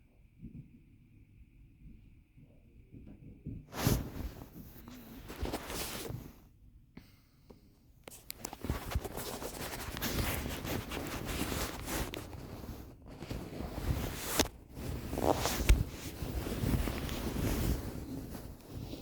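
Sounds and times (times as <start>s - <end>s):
microphone handling rustling: 3.7s - 6.4s, 8.1s - 19.0s.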